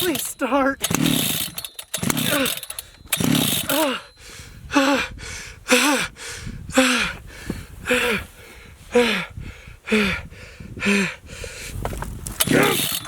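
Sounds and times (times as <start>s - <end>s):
chainsaw pull-start whirring: 0.0s - 4.9s, 12.2s - 13.0s.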